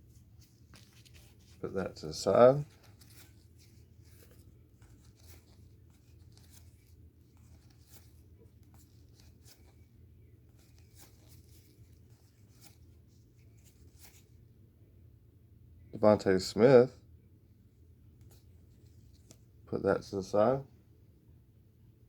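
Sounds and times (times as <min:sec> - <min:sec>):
low room hum: 0:00.0 - 0:22.0
trading cards flipped by hand: 0:00.1 - 0:09.9, 0:10.5 - 0:14.4.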